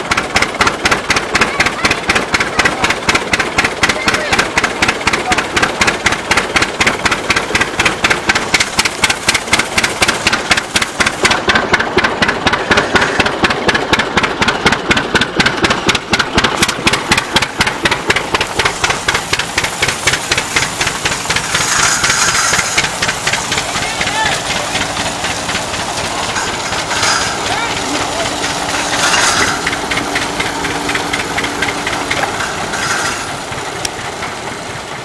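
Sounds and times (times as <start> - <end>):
tractor engine knocking exhaust: 0.0 - 35.0
hiss: 18.4 - 23.8.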